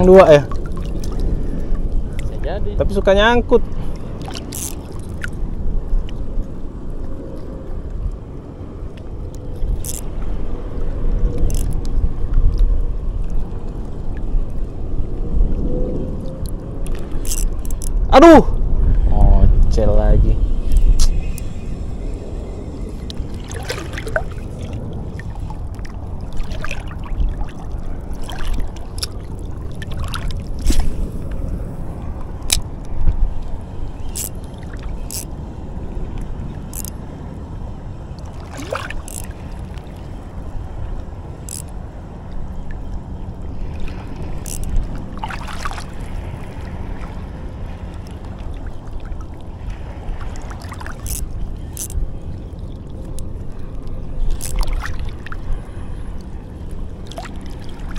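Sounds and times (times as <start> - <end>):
seawater sloshing and lapping: 0.0 - 2.4, 3.6 - 5.4, 22.4 - 35.3, 38.0 - 57.9
small splashes: 23.4 - 31.1, 38.3 - 39.9, 45.2 - 47.1, 54.3 - 55.4.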